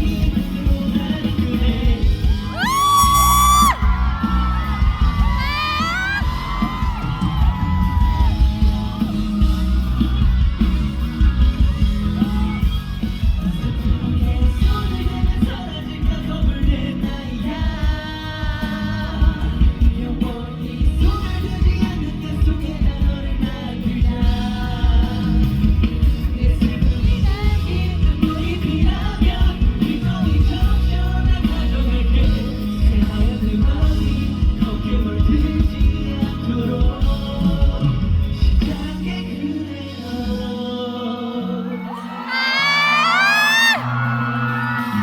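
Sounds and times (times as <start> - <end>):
man singing: 0.0 - 9.9, 13.4 - 45.0
crowd shouting and cheering: 0.0 - 45.0
live pop-rock band: 0.0 - 45.0.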